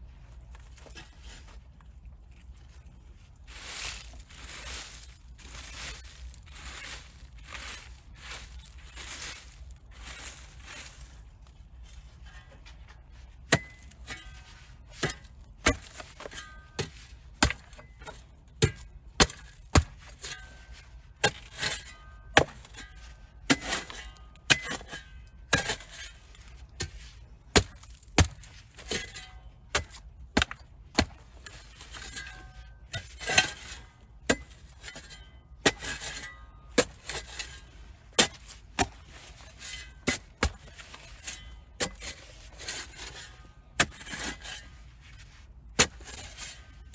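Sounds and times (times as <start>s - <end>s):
metal tool chopping into soil: 13.5s - 14.4s, 15.0s - 20.6s, 21.2s - 37.6s, 38.2s - 44.6s, 45.8s - 46.6s.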